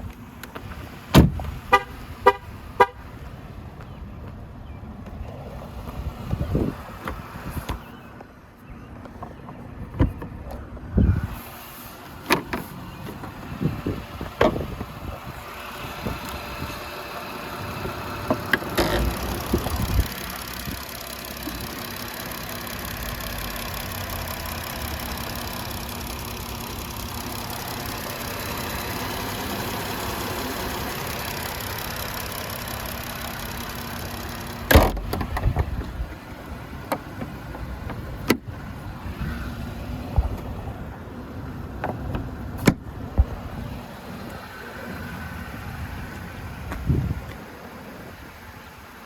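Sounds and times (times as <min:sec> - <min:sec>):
car engine idling: 0:00.0 - 0:08.0, 0:11.2 - 0:49.0
loud thump: 0:01.1 - 0:01.5.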